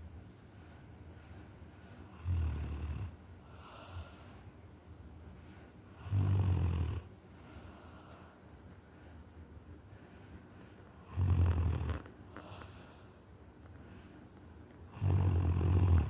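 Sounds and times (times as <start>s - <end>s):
quiet breathing: 0.3s - 16.0s
loud snoring: 2.2s - 3.1s, 6.0s - 7.1s, 11.0s - 12.1s, 14.9s - 16.0s.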